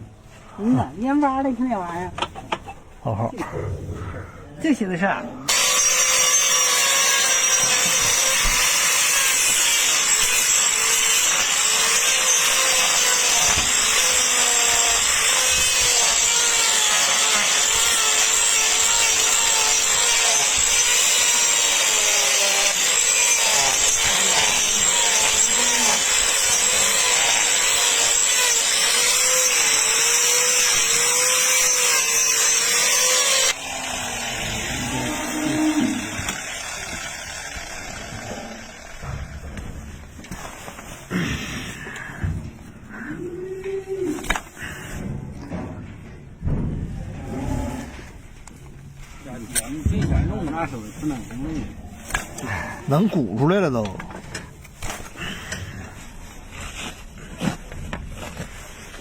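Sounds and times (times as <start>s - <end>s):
power cutter cutting hoof: 5.5s - 42.0s.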